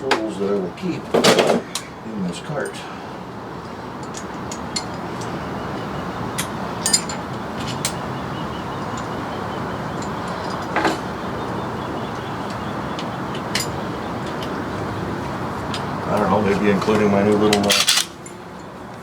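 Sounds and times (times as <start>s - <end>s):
metal tools clinking and clanking: 3.6s - 8.1s, 10.0s - 11.1s, 13.0s - 14.6s, 15.7s - 18.7s
metal rattle: 17.5s - 18.4s.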